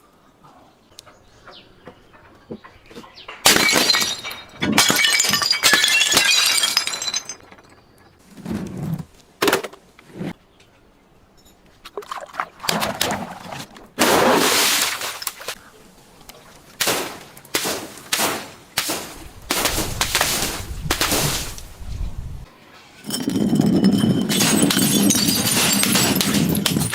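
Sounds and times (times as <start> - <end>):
glass bottles breaking: 3.4 - 8.0, 23.0 - 26.9
glass tinkling: 23.0 - 26.9.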